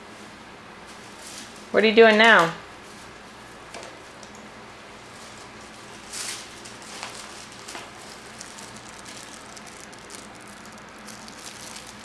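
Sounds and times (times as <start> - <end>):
background hiss: 0.0 - 12.0
faint rustling: 5.0 - 12.0.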